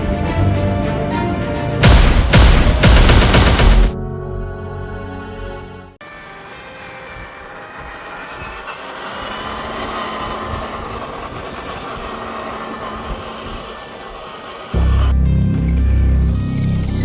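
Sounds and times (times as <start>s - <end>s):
electric motor and gearbox whine: 6.0s - 17.0s
rushing drivetrain and terrain noise: 6.0s - 17.0s.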